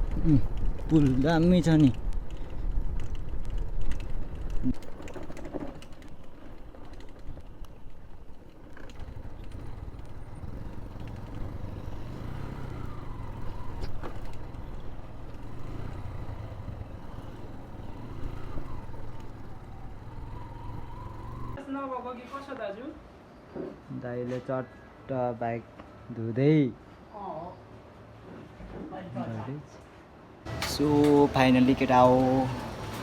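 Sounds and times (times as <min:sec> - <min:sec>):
motorcycle engine running: 0:00.0 - 0:21.6.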